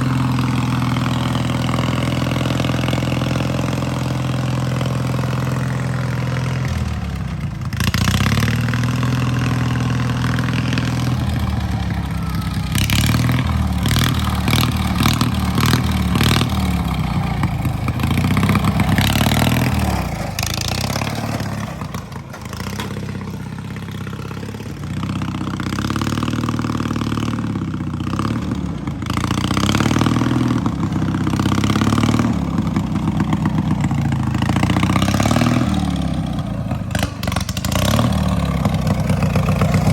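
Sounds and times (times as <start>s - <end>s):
lawnmower engine revving: 0.0s - 39.9s
clattering and knocking: 20.4s - 23.8s.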